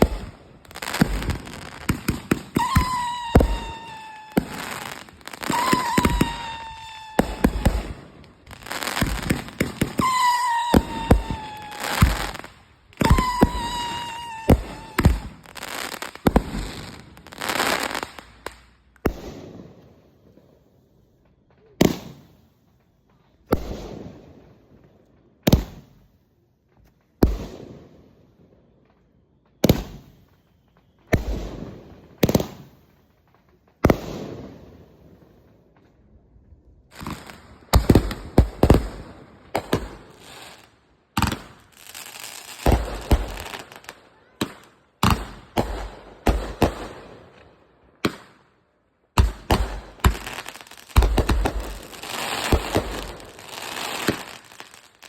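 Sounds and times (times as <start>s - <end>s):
loud echoing firework bangs: 0.0s - 18.2s, 33.8s - 35.3s, 36.9s - 47.4s, 49.2s - 54.8s
fireworks whistling: 0.0s - 19.5s, 29.0s - 33.0s, 36.9s - 47.3s, 49.2s - 55.0s
fireworks crackling bangs: 0.0s - 19.8s, 21.7s - 24.2s, 29.6s - 36.1s, 36.8s - 48.4s, 49.1s - 55.0s.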